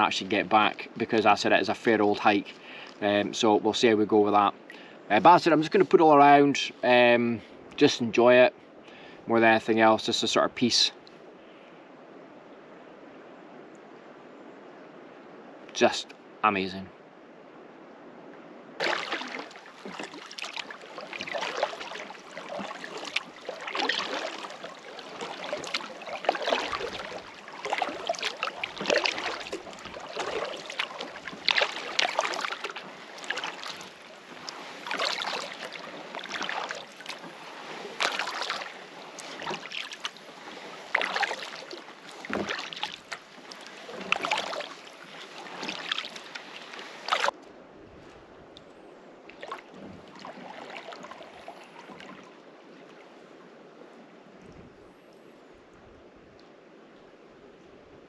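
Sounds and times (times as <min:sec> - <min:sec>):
paddle splashing through water: 0:18.8 - 0:48.3, 0:49.3 - 0:54.7.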